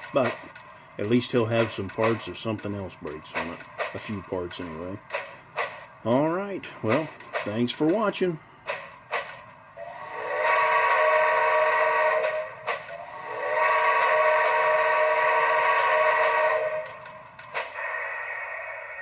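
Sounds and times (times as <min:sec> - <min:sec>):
model train steam whistle: 0:09.8 - 0:17.1, 0:17.7 - 0:19.0.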